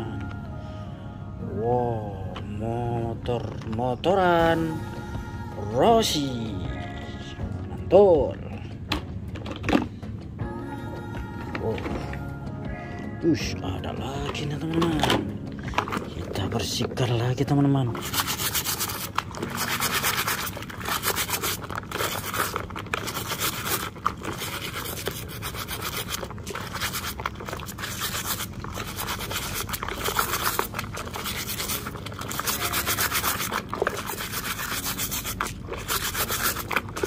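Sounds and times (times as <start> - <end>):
brush scrubbing with soapy water: 13.9 - 37.0.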